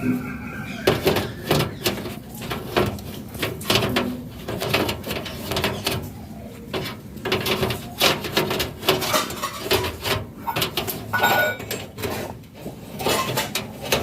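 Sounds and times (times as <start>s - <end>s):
parakeet chattering and cooing: 0.0s - 2.4s
sharp clicks and rattles: 0.8s - 14.0s.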